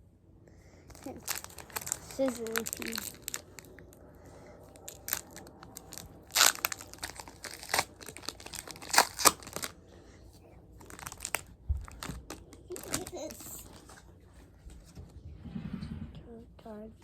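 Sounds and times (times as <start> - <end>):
foil wrapper crinkling and tearing: 0.9 - 4.0, 4.7 - 9.8, 10.8 - 14.0.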